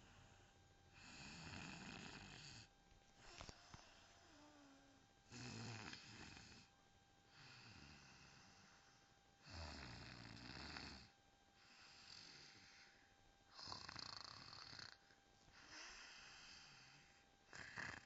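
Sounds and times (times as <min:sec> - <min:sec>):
soft breathy snores: 0:00.0 - 0:06.7, 0:07.3 - 0:18.0
person snoring loudly: 0:01.0 - 0:03.5, 0:04.4 - 0:06.7, 0:09.4 - 0:11.1, 0:13.5 - 0:15.0, 0:17.5 - 0:18.0.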